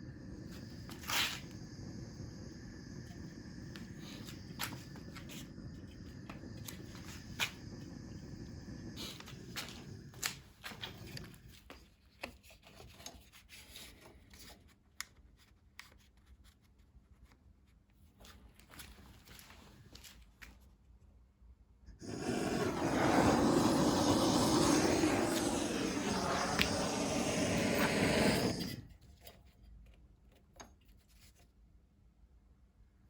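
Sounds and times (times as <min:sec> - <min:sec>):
low rumbling noise: 0:00.0 - 0:10.3, 0:22.0 - 0:28.8.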